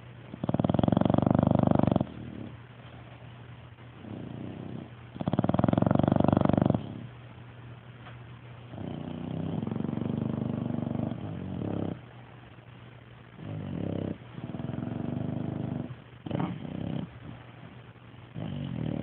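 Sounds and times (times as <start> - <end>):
dogs snoring: 0.3 - 3.2, 4.0 - 7.2, 8.7 - 12.1, 13.4 - 19.0.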